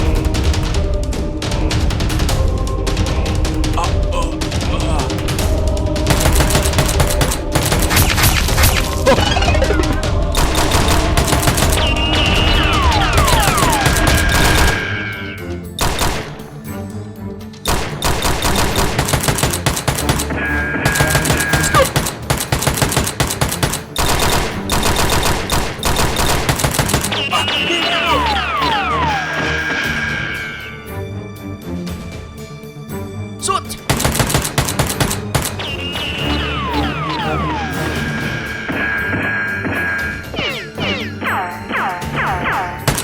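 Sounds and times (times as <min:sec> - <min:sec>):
background music: 0:00.0 - 0:43.0
gunfire sound effects: 0:06.1 - 0:14.9, 0:17.7 - 0:29.3, 0:38.8 - 0:43.0
falling whistling tones: 0:11.6 - 0:15.5, 0:27.1 - 0:30.9, 0:35.6 - 0:42.8
automatic gunfire: 0:20.9 - 0:27.5, 0:33.9 - 0:35.8
short falling whistles: 0:35.6 - 0:36.9.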